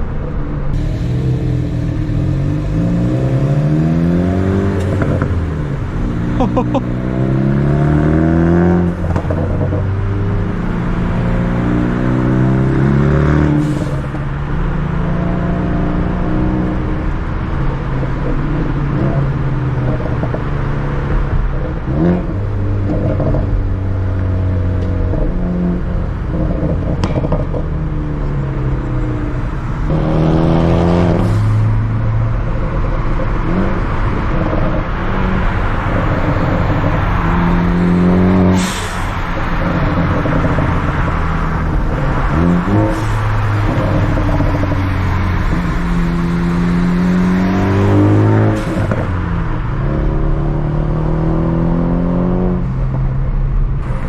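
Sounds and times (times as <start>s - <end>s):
car engine revving: 0.7s - 54.0s
exhaust pops: 26.4s - 27.8s.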